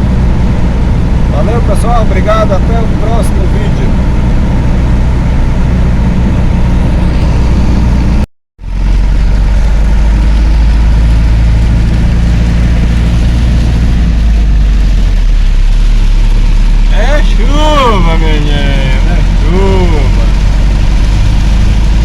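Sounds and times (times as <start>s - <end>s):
pickup engine drone: 0.0s - 22.0s
road noise: 0.0s - 22.0s.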